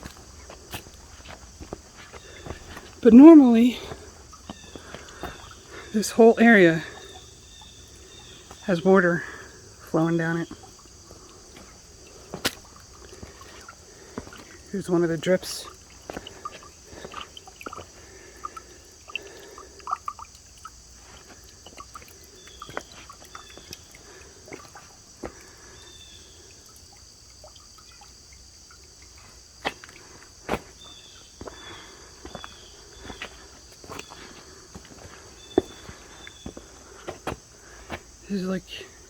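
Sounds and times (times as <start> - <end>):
insects chirring: 0.0 - 39.0
water drops on rock: 10.0 - 25.7.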